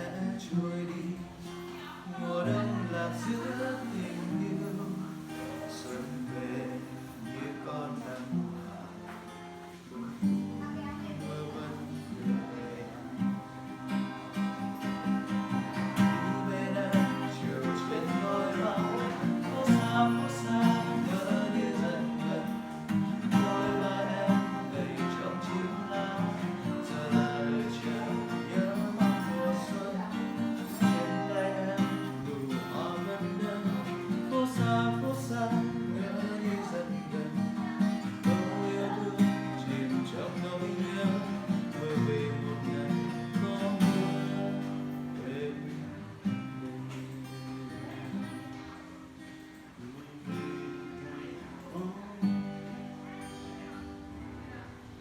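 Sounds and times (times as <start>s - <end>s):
plucked and strummed guitar: 0.0s - 55.0s.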